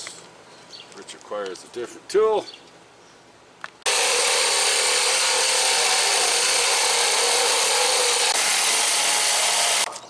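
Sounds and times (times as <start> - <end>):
power tool cutting steel: 3.9 - 9.9.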